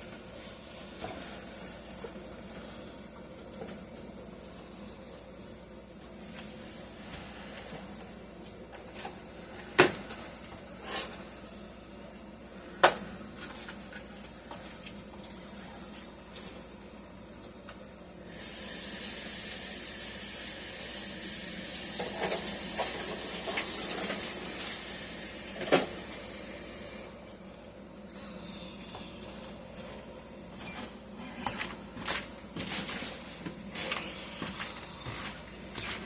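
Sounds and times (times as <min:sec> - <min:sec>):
kitchen tap running: 0:18.3 - 0:26.8.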